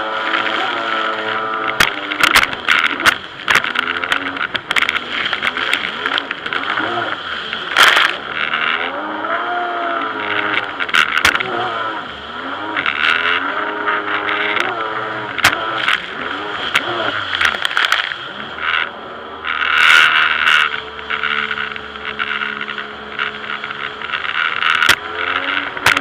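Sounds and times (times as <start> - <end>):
sharp splashes or knocks: 0.0 - 8.8, 14.2 - 18.8
jet ski engine revving: 0.0 - 26.0
rushing water: 0.0 - 26.0.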